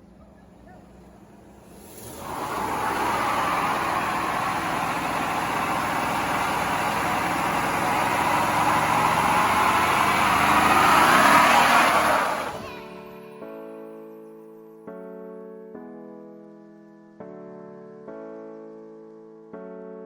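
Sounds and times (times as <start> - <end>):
tires spinning: 0.8 - 12.7
truck engine at full throttle: 0.8 - 12.7
soft piano music: 12.6 - 20.0.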